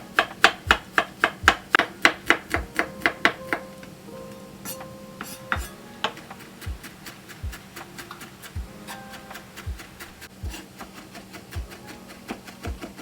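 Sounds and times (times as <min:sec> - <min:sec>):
light background music: 0:00.0 - 0:13.0
knife chopping on cutting board: 0:00.2 - 0:03.6, 0:05.2 - 0:13.0
knocks and taps: 0:09.6 - 0:13.0.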